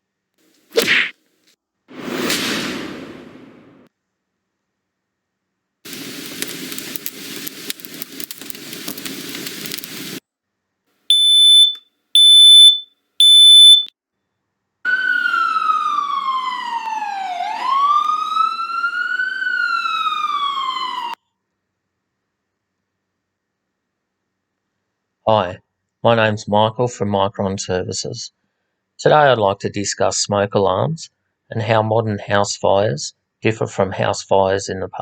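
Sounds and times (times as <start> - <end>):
crackling with low rumble: 5.9 - 10.2
smoke alarm beeps: 11.1 - 13.9
emergency vehicle siren wailing: 14.9 - 21.2.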